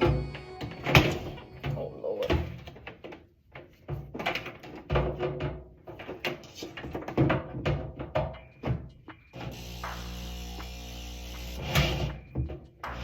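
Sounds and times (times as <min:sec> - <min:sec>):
metal casing knocks and scraping: 0:02.4 - 0:09.0.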